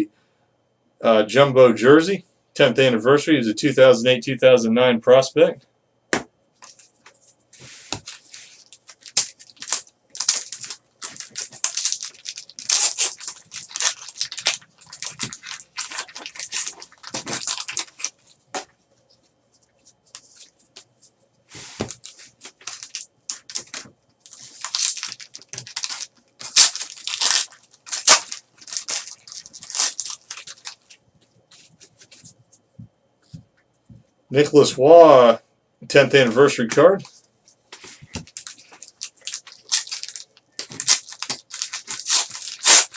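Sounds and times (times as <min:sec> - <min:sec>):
wrapper tearing and crinkling: 0:08.0 - 0:18.2, 0:22.0 - 0:31.0, 0:38.3 - 0:42.9.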